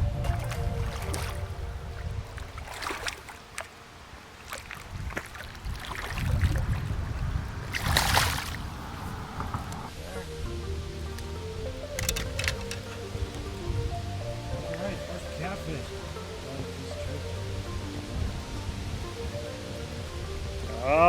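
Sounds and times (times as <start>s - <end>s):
rushing water: 0.0s - 21.0s
wind: 0.0s - 21.0s.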